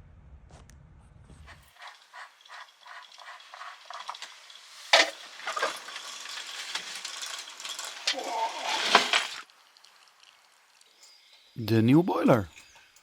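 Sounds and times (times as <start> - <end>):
metal clattering: 1.8 - 9.4.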